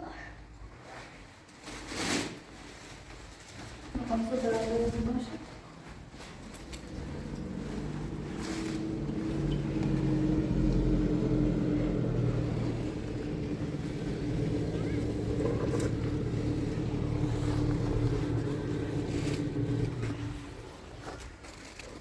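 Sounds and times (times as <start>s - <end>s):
motor humming: 6.6s - 20.8s.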